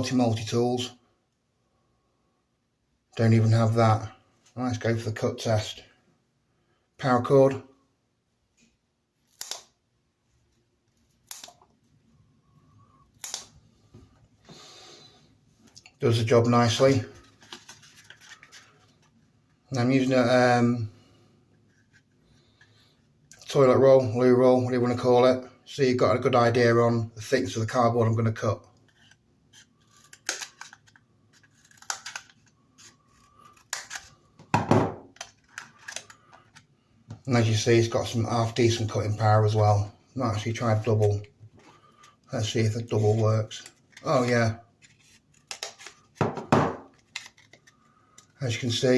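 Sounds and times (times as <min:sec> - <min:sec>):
scissors cutting cardboard tube: 0:28.9 - 0:34.1.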